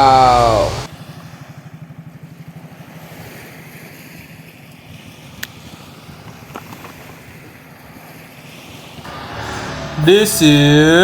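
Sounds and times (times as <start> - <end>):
surf: 0.0 - 1.5, 8.2 - 11.0.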